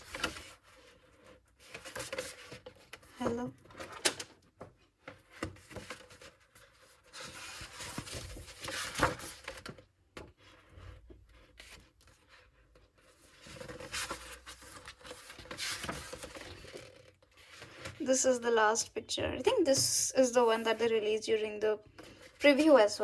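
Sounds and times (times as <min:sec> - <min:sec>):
book pages turning: 0:05.1 - 0:10.8, 0:11.4 - 0:18.0.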